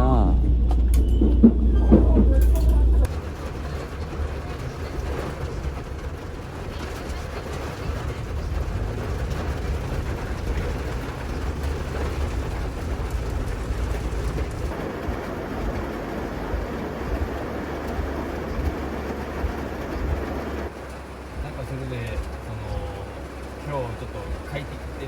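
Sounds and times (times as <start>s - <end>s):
faint wheel noise: 0.0s - 25.0s
train rumble inside carriage: 0.0s - 25.0s.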